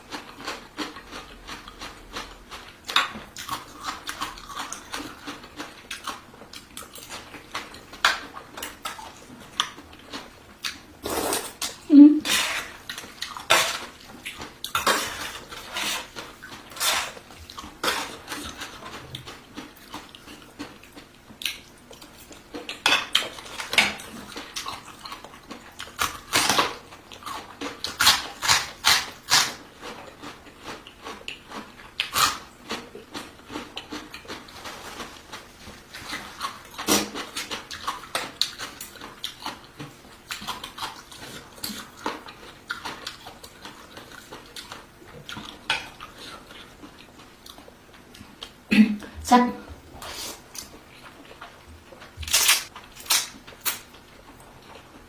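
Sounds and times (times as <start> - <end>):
close-up eating sounds: 0.0 - 55.0.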